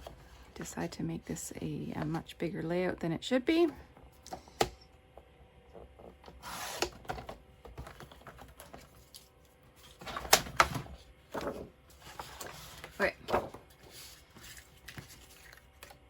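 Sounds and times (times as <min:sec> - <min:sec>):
paper rustling: 0:11.3 - 0:16.0.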